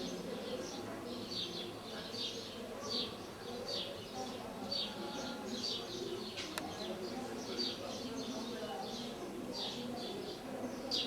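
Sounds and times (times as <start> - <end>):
murmur of distant voices: 0.0 - 11.0
small birds chirping: 0.0 - 11.0.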